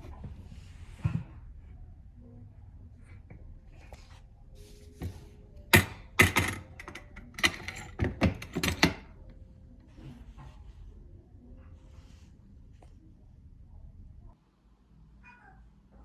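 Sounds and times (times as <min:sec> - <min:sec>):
sharp knocks and clatters: 0:05.0 - 0:09.1.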